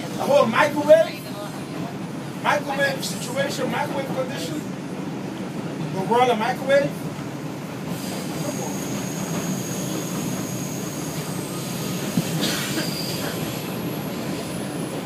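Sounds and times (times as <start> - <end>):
wheels rumbling on track: 0.0 - 15.0
high wheel squeal: 8.0 - 14.9.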